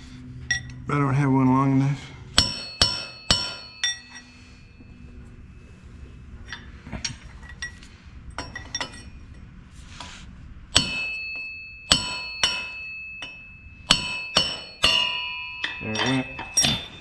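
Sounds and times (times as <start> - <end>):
hammer striking metal: 2.4 - 4.5, 10.7 - 17.0.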